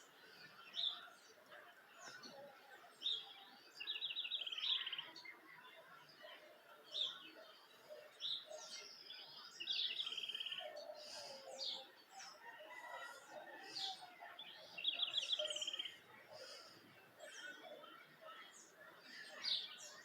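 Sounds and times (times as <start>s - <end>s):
birds singing and calling: 0.0s - 20.0s.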